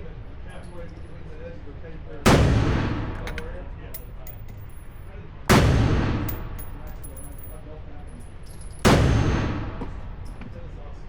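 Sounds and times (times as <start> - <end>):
gunshots echoing: 2.3 - 3.6, 5.5 - 7.2, 8.8 - 10.2.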